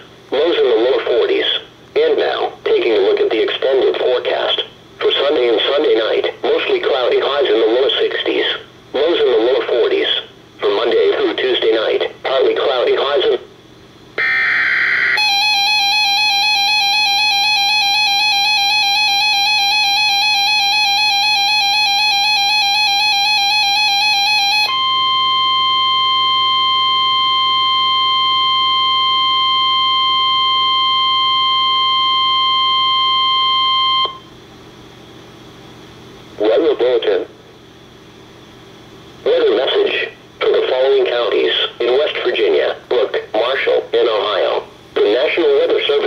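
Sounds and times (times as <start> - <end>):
faint radio hiss: 0.0 - 14.1, 34.7 - 46.0
single-tone alarm: 14.2 - 34.3
two-tone attention signal: 14.2 - 34.3.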